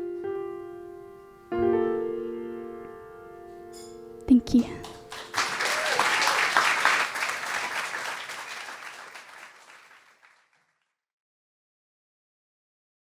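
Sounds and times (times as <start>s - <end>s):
audience applauding: 4.7s - 10.6s
person whooping: 5.5s - 6.8s.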